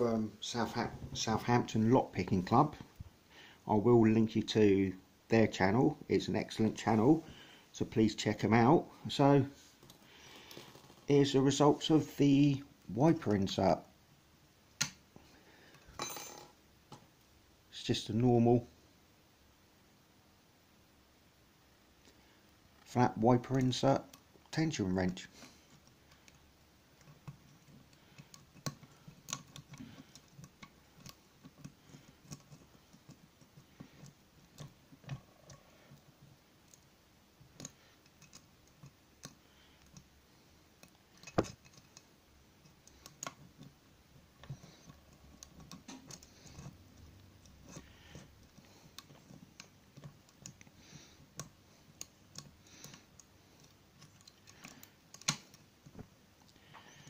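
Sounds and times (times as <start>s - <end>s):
lock picking clicks and scrapes: 27.0s - 36.1s, 36.7s - 40.1s, 40.8s - 55.8s.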